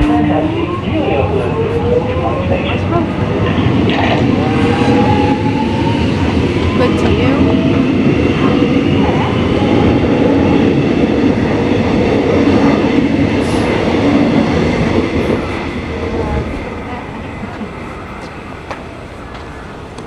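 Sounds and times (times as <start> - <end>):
electric train rumbling: 0.0 - 20.0.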